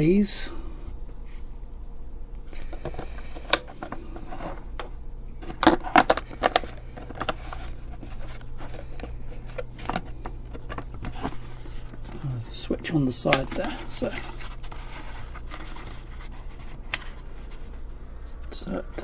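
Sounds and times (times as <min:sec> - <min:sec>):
handling clicks and knocks: 0:02.7 - 0:14.8.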